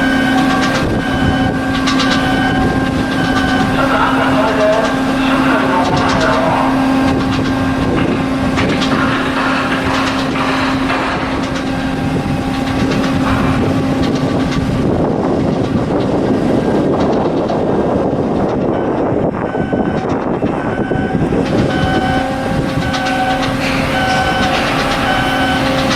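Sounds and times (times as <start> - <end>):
machinery humming: 0.0 - 25.9
rough rushing noise: 0.0 - 25.9.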